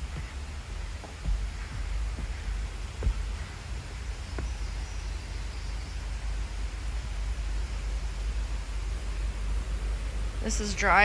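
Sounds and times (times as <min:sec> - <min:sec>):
footsteps on a trail: 0:00.0 - 0:10.4
steady rushing hiss: 0:00.0 - 0:11.0
wind rumble on microphone: 0:00.0 - 0:11.0.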